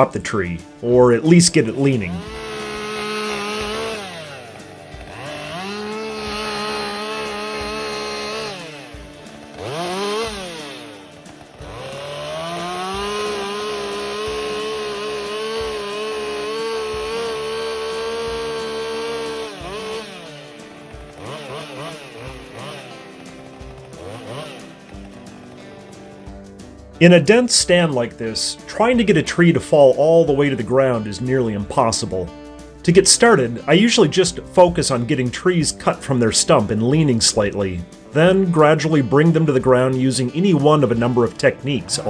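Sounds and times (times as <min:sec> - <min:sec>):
chainsaw cutting tree trunk: 0:00.0 - 0:42.0.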